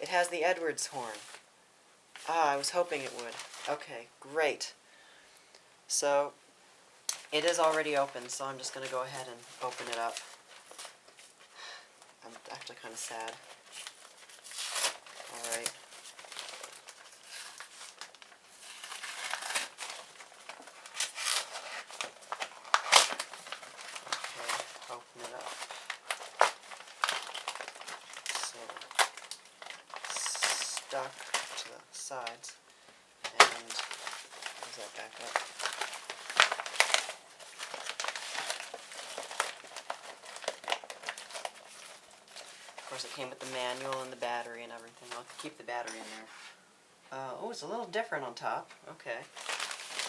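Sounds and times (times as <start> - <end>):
packaging crinkling: 7.1 - 46.3, 49.2 - 50.0.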